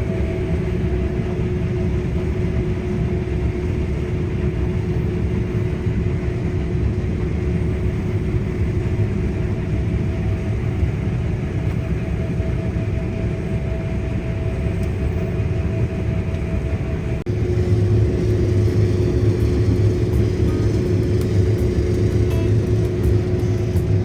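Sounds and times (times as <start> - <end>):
steady machine hum: 0.0 - 24.0
combine harvester rumbling: 17.3 - 24.0.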